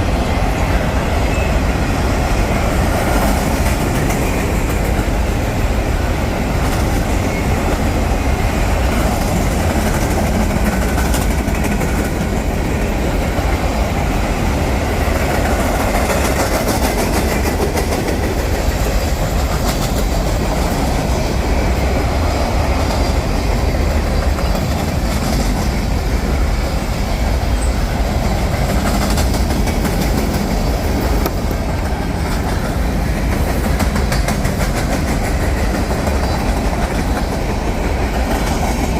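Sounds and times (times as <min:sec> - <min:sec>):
train wheels clacking on rails: 0:00.0 - 0:38.9.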